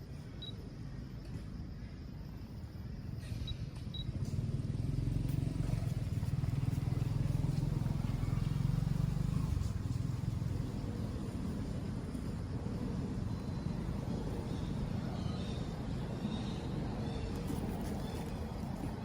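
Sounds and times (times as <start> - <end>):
motorcycle passing by: 4.0 - 19.0.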